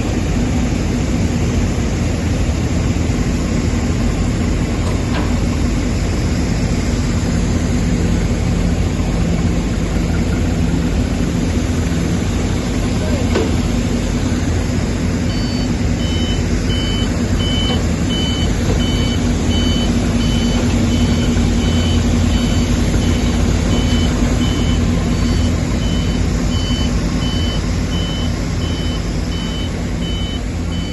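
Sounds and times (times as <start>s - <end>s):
low rumble and hum: 0.0s - 30.9s
reversing alarm beeping: 15.3s - 30.9s.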